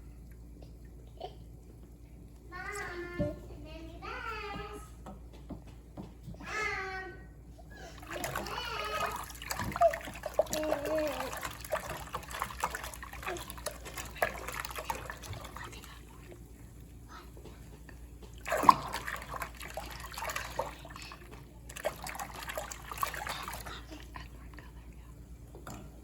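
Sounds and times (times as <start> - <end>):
water swirling down a drain: 7.9 - 26.0
water splash: 8.0 - 16.2, 18.3 - 24.0.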